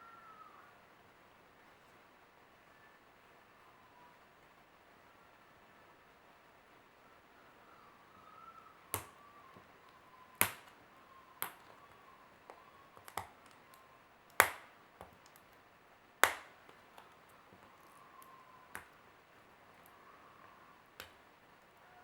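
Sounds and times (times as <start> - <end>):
plastic capsule clicks and cracks: 11.4 - 15.6, 16.2 - 19.0.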